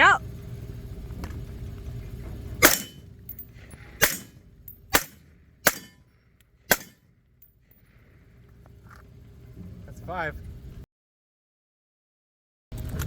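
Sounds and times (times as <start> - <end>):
rifle shots: 2.6 - 3.1, 4.0 - 6.0, 6.7 - 7.0.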